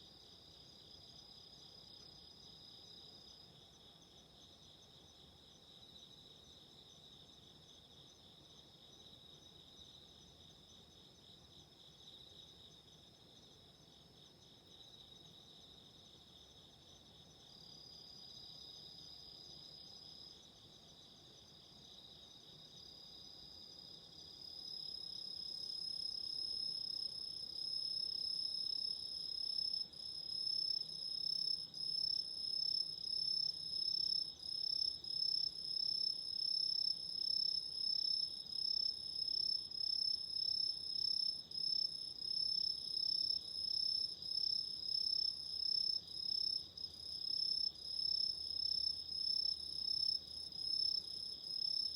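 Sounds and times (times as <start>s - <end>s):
insects chirping in a trill: 0.0s - 51.9s.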